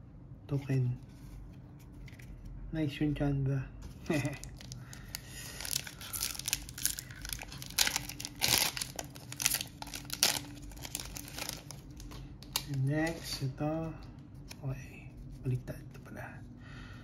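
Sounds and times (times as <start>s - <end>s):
foil wrapper crinkling and tearing: 3.9s - 13.4s.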